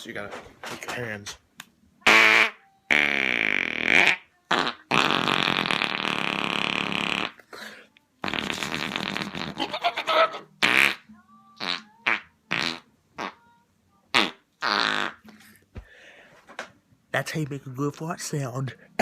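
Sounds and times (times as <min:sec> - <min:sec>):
hand fart noises: 0:02.0 - 0:07.5, 0:08.2 - 0:13.4, 0:14.1 - 0:15.5.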